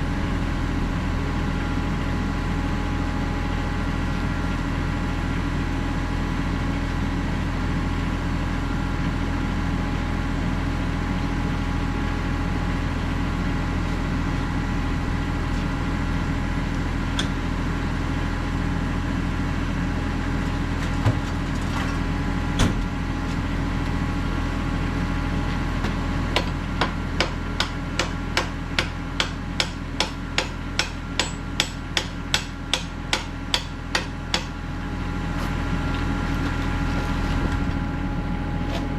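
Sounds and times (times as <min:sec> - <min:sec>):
hammer striking metal pin: 0:26.4 - 0:34.5.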